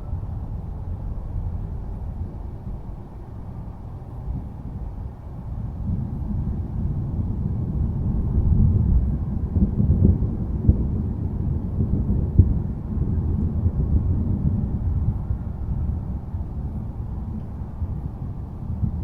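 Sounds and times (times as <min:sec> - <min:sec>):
thunder rumbling: 0:00.0 - 0:19.0.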